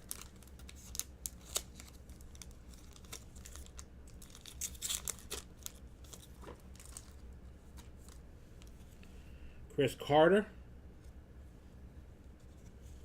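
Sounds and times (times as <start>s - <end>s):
wrapper tearing and crinkling: 0.0s - 7.2s.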